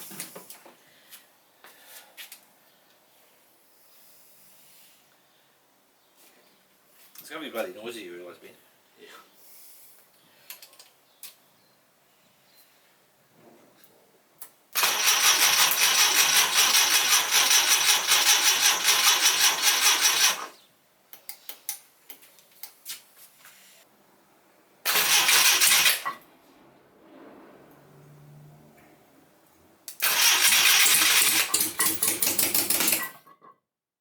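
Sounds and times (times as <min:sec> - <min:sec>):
engine cranking on starter: 0:14.8 - 0:20.6, 0:24.8 - 0:26.2, 0:29.9 - 0:33.3.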